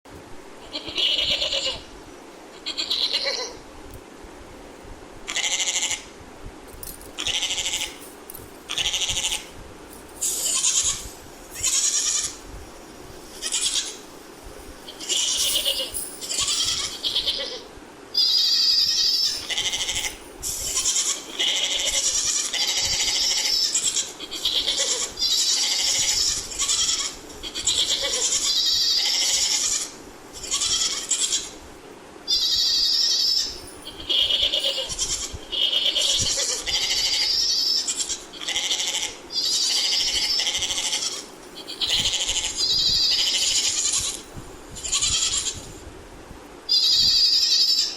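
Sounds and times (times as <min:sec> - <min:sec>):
goat bleating: 0:00.6 - 0:01.9, 0:02.6 - 0:03.6, 0:05.3 - 0:06.1, 0:07.2 - 0:08.0, 0:08.7 - 0:09.5, 0:10.3 - 0:12.4, 0:13.3 - 0:14.0, 0:14.9 - 0:31.5, 0:32.3 - 0:44.2, 0:44.8 - 0:45.6, 0:46.7 - 0:47.9.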